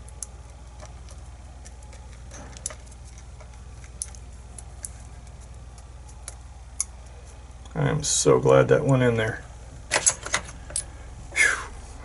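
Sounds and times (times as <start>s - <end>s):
small metal clicks and ticks: 0.0s - 7.8s
low steady hum: 0.0s - 12.0s.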